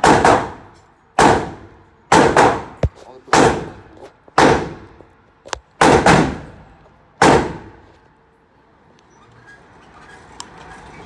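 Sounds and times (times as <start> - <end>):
loud gunshots echoing: 1.2 - 3.8, 4.4 - 4.9, 5.8 - 6.5, 7.2 - 7.8.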